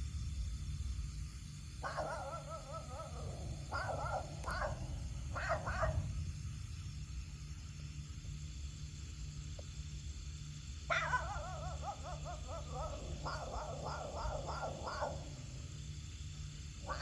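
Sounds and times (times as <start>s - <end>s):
animal calling: 10.9s - 15.8s, 16.8s - 17.0s.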